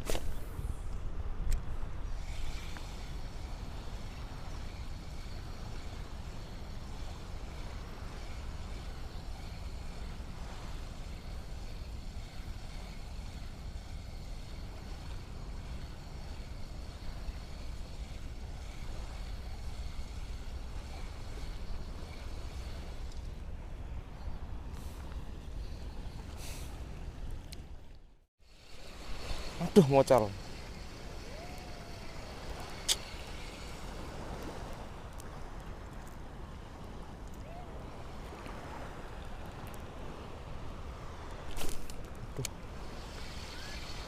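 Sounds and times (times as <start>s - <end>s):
faint high hum: 28.6s - 35.6s.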